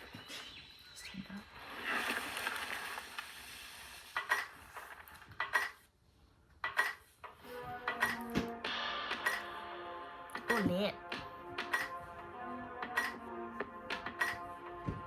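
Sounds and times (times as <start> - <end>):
hissing wash: 1.5 - 4.9
steady musical notes: 7.5 - 15.0.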